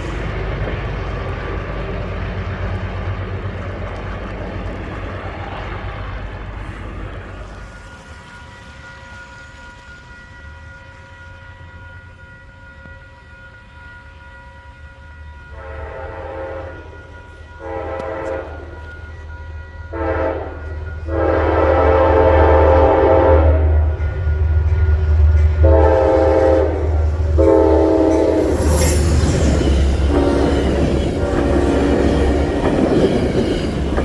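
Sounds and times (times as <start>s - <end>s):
train engine and rail rumble: 0.0s - 34.0s
locomotive horn blasts: 9.7s - 24.7s, 25.4s - 33.4s.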